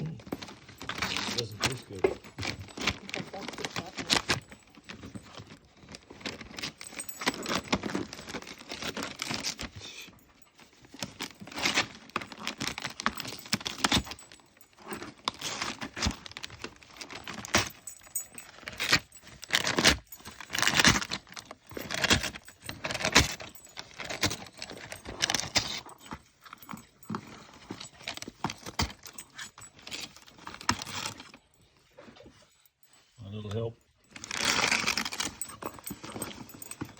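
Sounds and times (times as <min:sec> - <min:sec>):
gift paper crinkling and tearing: 0:00.1 - 0:10.2, 0:34.1 - 0:36.9.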